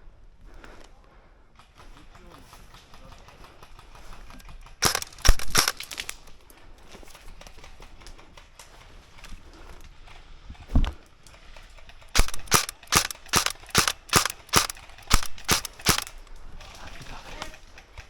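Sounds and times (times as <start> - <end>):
airsoft gun shots: 4.8 - 6.1, 12.2 - 16.2.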